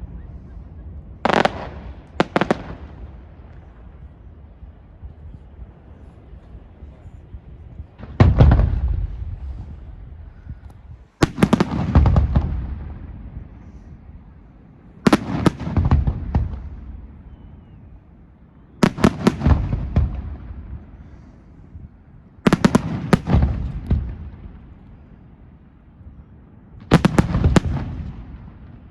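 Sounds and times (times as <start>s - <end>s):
fireworks cracking and booming: 1.2s - 5.6s, 7.7s - 10.3s, 11.2s - 14.1s, 15.0s - 17.3s, 18.8s - 21.2s, 22.4s - 25.2s, 26.8s - 28.9s.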